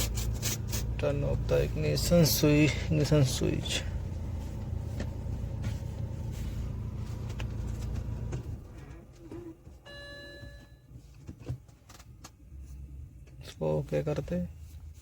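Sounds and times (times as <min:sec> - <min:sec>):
car engine idling with misfire: 0:00.0 - 0:09.8
short electronic beep: 0:09.9 - 0:10.8.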